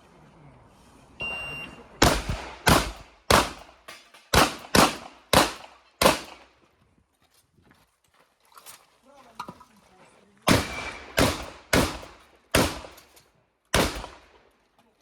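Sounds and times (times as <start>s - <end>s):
shot timer beep: 1.2s - 1.8s
shotgun shots echoing: 2.0s - 6.5s, 10.5s - 13.1s, 13.7s - 14.4s.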